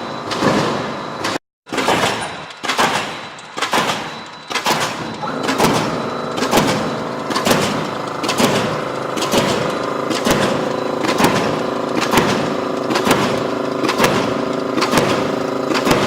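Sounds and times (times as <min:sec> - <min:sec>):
machine stamping stroke: 0:00.0 - 0:16.0
steady motor hum: 0:04.9 - 0:16.0.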